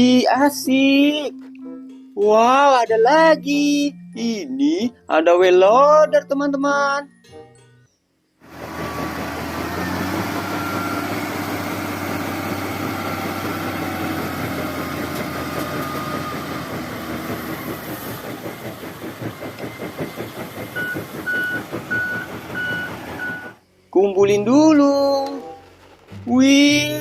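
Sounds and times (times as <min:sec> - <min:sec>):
diesel engine running: 0:08.4 - 0:23.7
reversing beeper: 0:08.7 - 0:17.8, 0:20.6 - 0:23.6.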